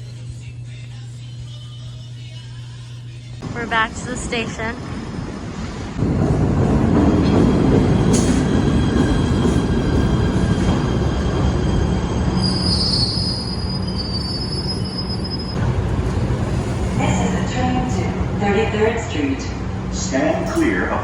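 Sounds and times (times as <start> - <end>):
train rumbling on rails: 3.4 - 21.0
high-pitched wheel squeal: 12.3 - 15.6.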